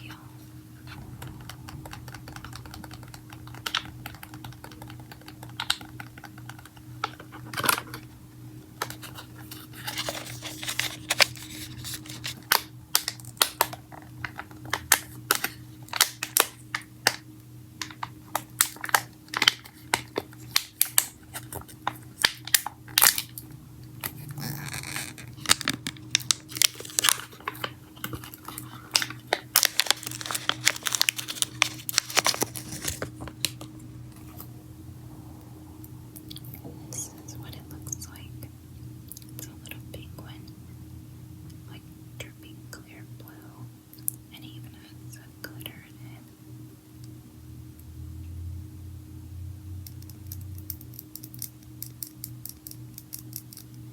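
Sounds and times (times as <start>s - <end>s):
steady low hum: 0.0s - 53.9s
plastic packaging clicks and crinkles: 1.2s - 8.1s, 8.8s - 17.2s, 17.8s - 33.7s.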